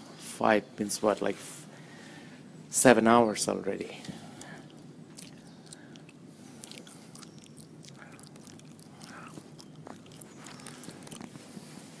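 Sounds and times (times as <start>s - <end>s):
steady low hum: 0.0s - 12.0s
faint clicks and crackles: 4.4s - 12.0s.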